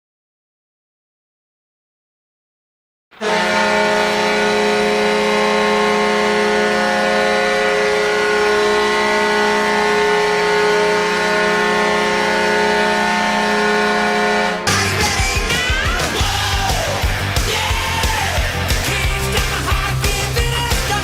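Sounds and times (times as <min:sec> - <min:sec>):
hockey goal horn blast: 0:03.2 - 0:15.6.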